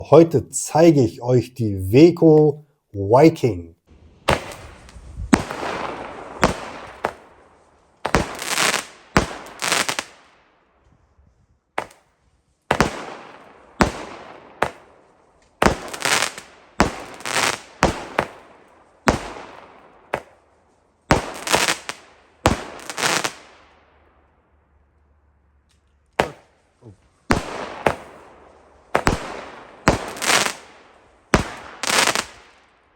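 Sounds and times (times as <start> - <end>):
firework battery bangs: 4.2 - 7.3, 27.3 - 28.3, 28.9 - 30.6.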